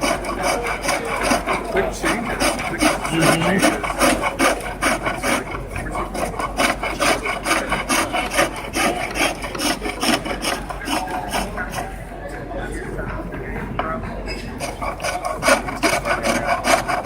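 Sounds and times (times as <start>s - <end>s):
turning tool scraping spinning wood: 0.0s - 12.1s, 12.9s - 17.0s.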